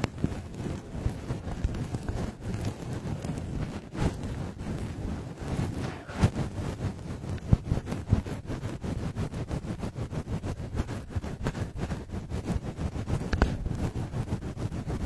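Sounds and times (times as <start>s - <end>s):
rapid whooshing pulses: 5.5s - 6.8s.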